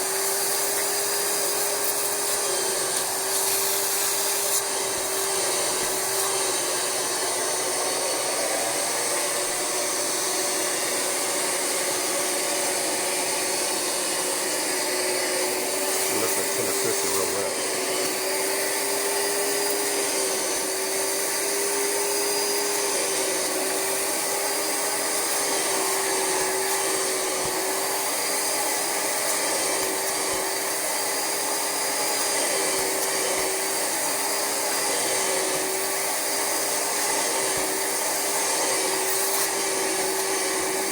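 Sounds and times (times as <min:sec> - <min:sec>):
carpet cleaner suction motor whining: 0:00.0 - 0:40.9.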